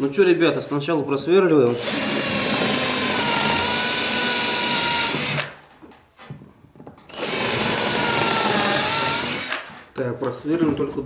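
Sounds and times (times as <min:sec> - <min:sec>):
power drill boring into wood: 0:01.7 - 0:05.6, 0:07.1 - 0:09.7.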